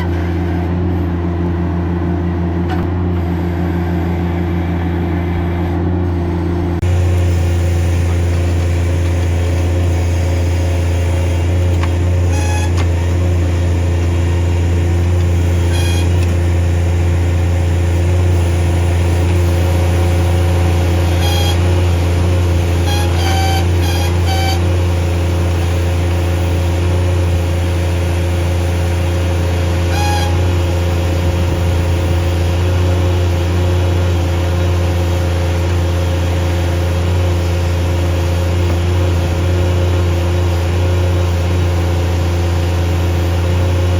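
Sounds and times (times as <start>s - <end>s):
loader diesel engine running: 0.0s - 43.9s
hydraulic valves squeaking: 7.0s - 25.8s, 29.8s - 30.6s.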